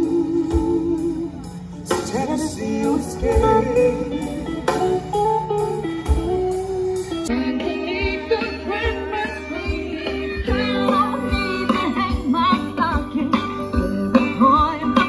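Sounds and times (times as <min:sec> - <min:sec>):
person singing: 0:00.0 - 0:05.8, 0:07.2 - 0:15.0
guitar over a steady beat: 0:00.0 - 0:15.0.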